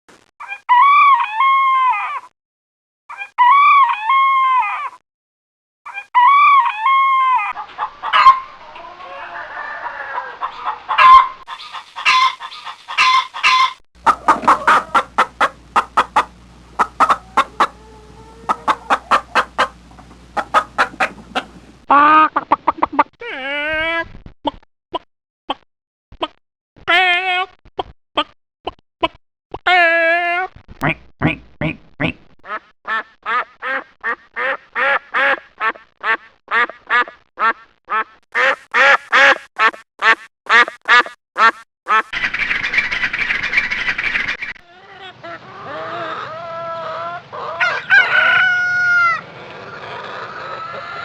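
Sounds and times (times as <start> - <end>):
chicken drawn-out calls: 0.4 - 2.3, 3.1 - 5.0, 5.9 - 23.0, 32.4 - 51.0
hens clucking and cackling: 5.9 - 23.1, 40.6 - 51.0
low steady hum: 14.0 - 22.2.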